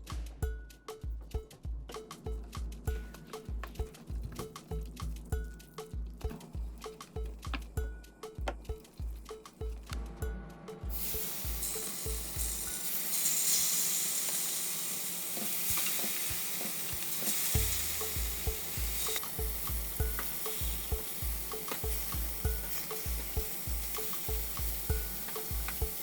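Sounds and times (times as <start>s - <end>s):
chicken sizzling on a grill: 10.9s - 26.0s.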